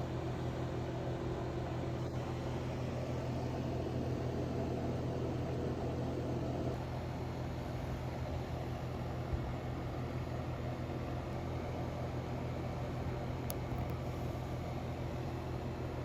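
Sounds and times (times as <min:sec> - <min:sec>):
fan whirring: 0:00.0 - 0:16.0
low electrical hum: 0:00.0 - 0:16.0.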